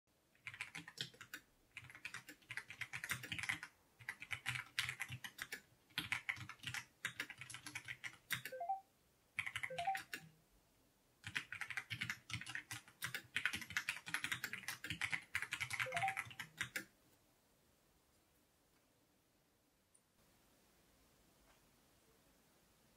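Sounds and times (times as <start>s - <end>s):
mechanical keyboard typing: 0.4s - 8.8s, 9.4s - 10.3s, 11.2s - 16.9s.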